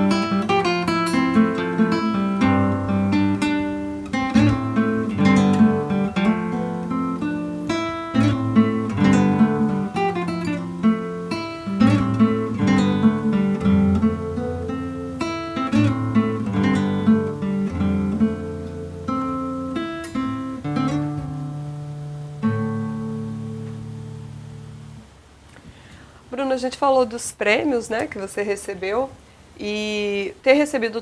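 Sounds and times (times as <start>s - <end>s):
classical guitar playing: 0.0s - 25.5s.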